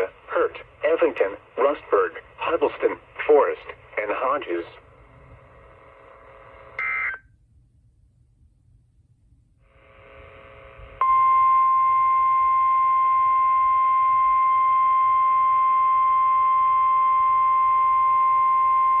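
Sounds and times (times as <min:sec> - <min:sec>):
faint radio hiss: 0:00.0 - 0:07.4, 0:08.0 - 0:11.0
loud steady alarm tone: 0:11.0 - 0:19.0.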